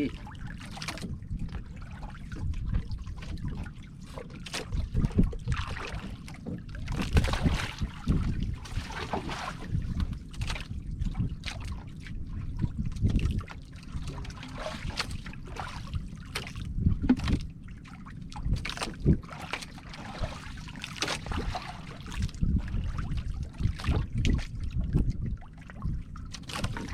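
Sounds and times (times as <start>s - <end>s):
wind buffeting microphone: 0.0s - 3.7s, 4.7s - 14.3s, 15.1s - 17.6s, 21.2s - 26.9s
water lapping against boat hull: 0.0s - 26.9s.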